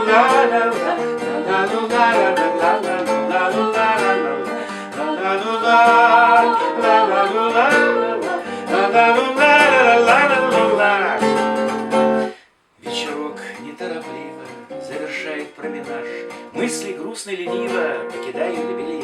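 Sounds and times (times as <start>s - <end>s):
people singing: 0.0s - 12.2s
acoustic guitar strumming: 0.0s - 19.0s.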